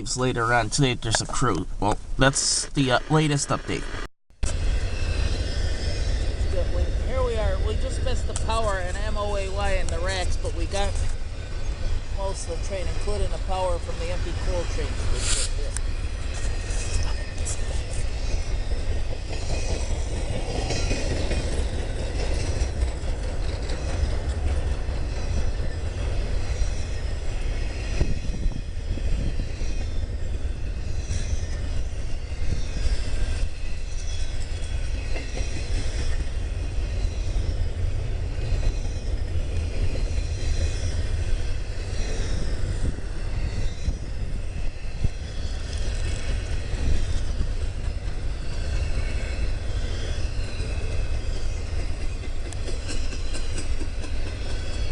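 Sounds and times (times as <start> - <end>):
train cars rolling past: 0.0 - 54.9
high-pitched wheel squeal: 4.7 - 7.6, 23.5 - 54.9.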